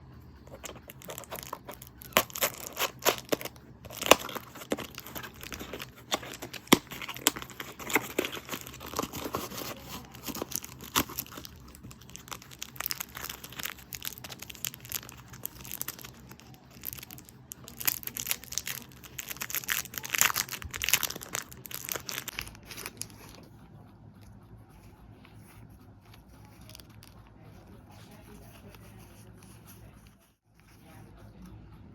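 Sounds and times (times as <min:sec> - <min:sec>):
packaging crinkling and tearing: 0:00.5 - 0:23.5.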